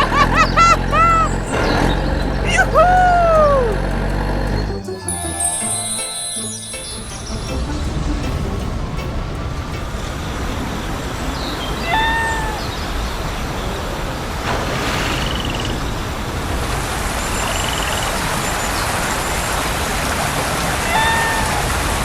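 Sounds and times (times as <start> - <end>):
rumbling hissing engine noise: 0.0 - 12.8
warbling chirps: 0.0 - 13.0.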